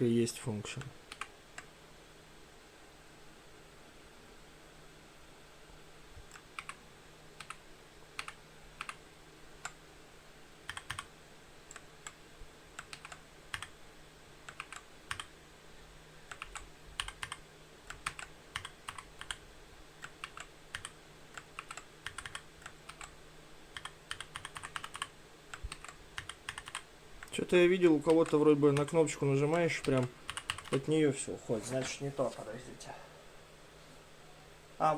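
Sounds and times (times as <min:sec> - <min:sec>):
mechanical keyboard keystrokes: 0:10.7 - 0:11.1, 0:12.8 - 0:13.7, 0:14.5 - 0:15.3, 0:16.3 - 0:19.4, 0:20.0 - 0:23.1, 0:23.8 - 0:27.4, 0:29.8 - 0:30.8.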